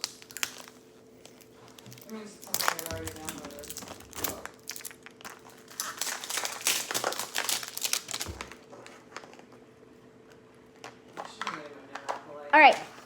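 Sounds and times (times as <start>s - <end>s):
plastic wrapping crinkling: 0.0s - 9.6s.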